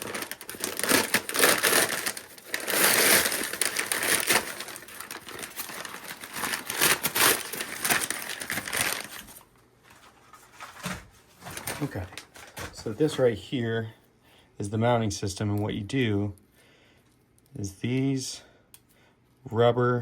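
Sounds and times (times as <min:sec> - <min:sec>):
packaging crinkling: 0:00.0 - 0:13.0.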